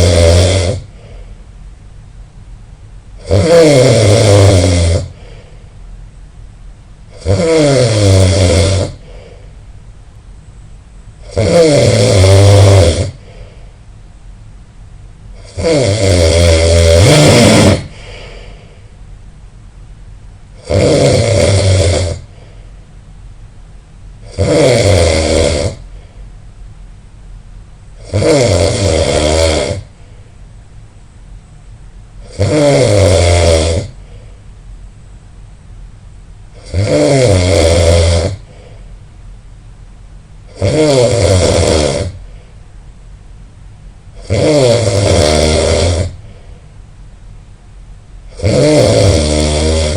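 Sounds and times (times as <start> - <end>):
person snoring loudly: 0.0 - 1.2, 3.2 - 5.4, 7.1 - 9.4, 11.2 - 13.5, 15.4 - 18.5, 20.6 - 22.4, 24.2 - 25.9, 28.0 - 29.9, 32.2 - 34.1, 36.5 - 38.6, 40.5 - 42.3, 44.2 - 46.3, 48.3 - 49.9.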